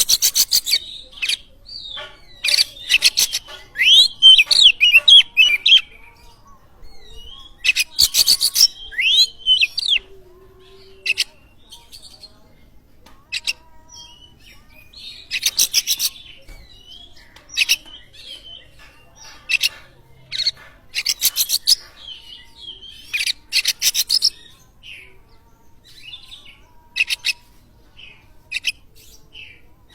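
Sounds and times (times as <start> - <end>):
bird rapid chattering notes: 0.0 - 5.9, 7.1 - 10.0, 15.1 - 16.9, 17.5 - 24.5
bird singing whistled warbles: 2.5 - 5.9.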